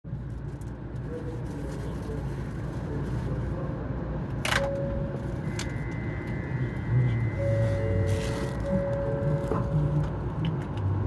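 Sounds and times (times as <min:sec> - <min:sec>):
train cabin rumble: 0:00.6 - 0:11.0
steady single tone: 0:04.6 - 0:10.0.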